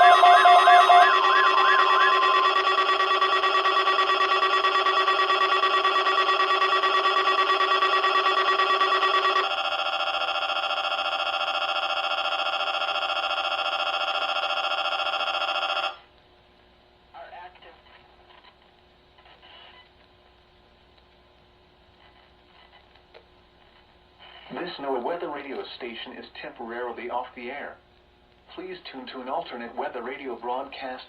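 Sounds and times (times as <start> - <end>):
fluttering electronic alert tone: 0.0 - 9.4
lower multi-tone alert: 0.0 - 9.5.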